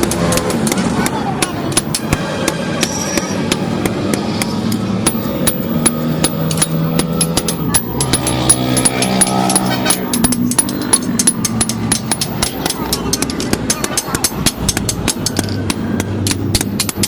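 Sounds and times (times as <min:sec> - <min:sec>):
hammer striking metal on anvil: 0:00.0 - 0:17.0.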